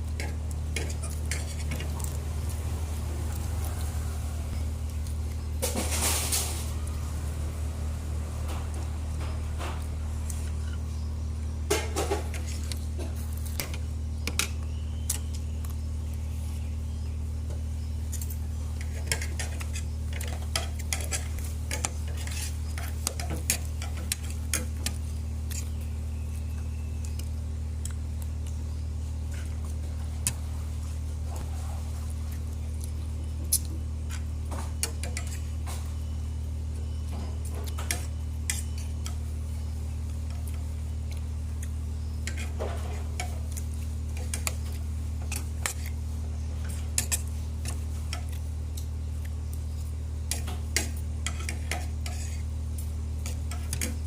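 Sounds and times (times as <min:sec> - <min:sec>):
utensils clinking on dishes: 0:18.1 - 0:25.7, 0:37.1 - 0:39.3, 0:42.2 - 0:46.0, 0:53.2 - 0:54.0.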